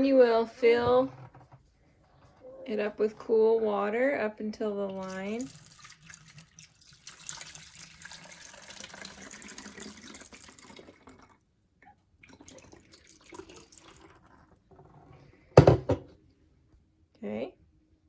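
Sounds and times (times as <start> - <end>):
tap water running into vessel: 4.9 - 11.4.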